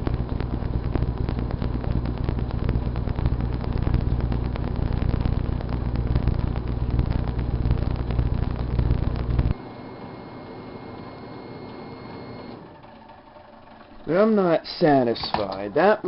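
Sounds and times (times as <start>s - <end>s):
dense crackle: 0.0s - 9.6s
microwave oven humming: 0.0s - 16.0s.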